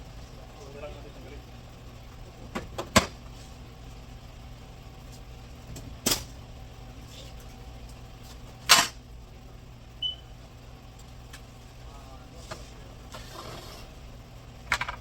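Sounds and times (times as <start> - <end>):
steady low hum: 0.0 - 15.0
sharp knocks on car parts: 2.5 - 3.2.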